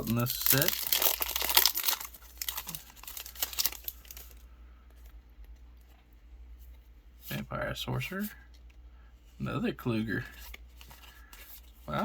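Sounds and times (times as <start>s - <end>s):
foil wrapper crinkling and tearing: 0.0s - 4.4s.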